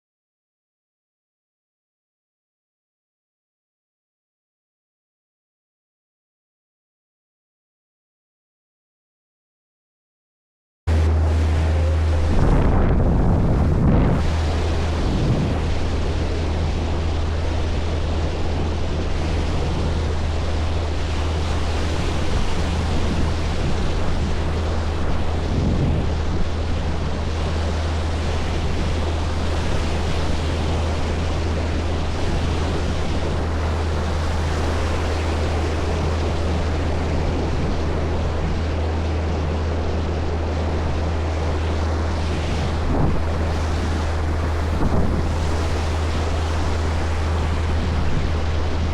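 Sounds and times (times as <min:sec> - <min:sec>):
boat engine hum: 0:10.9 - 0:48.9
rushing water: 0:10.9 - 0:48.9
wind buffeting microphone: 0:10.9 - 0:48.9.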